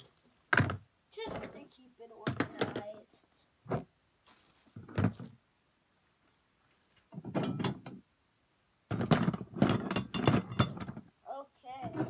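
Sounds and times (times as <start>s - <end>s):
metal parts clanking into container: 7.2s - 8.0s, 8.9s - 11.0s.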